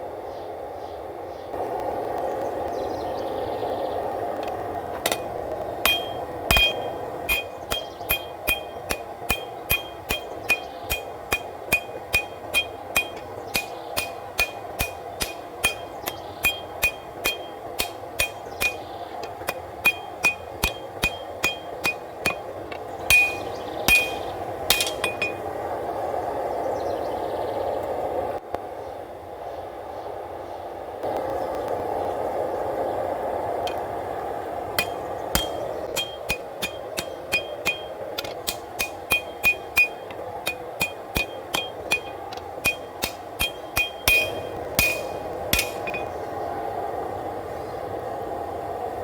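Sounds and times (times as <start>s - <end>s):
steady rushing noise: 1.5s - 26.8s, 31.0s - 49.0s
hammer blows ringing on anvil: 5.0s - 25.5s, 34.8s - 46.2s.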